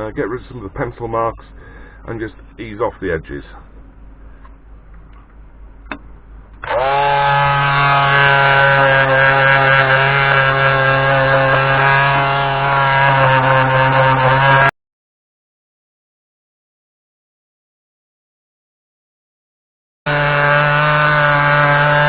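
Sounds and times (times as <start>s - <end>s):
palm sander running: 6.6s - 14.7s, 20.1s - 22.0s
sanding wood edges: 6.7s - 14.7s, 20.1s - 22.0s.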